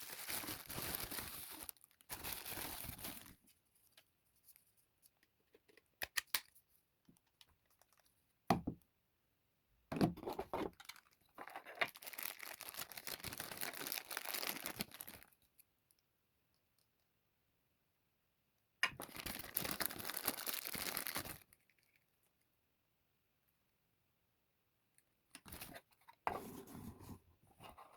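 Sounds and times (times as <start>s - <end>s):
wrapping crinkling and tearing: 0.0s - 3.4s, 10.8s - 15.4s, 19.0s - 22.0s.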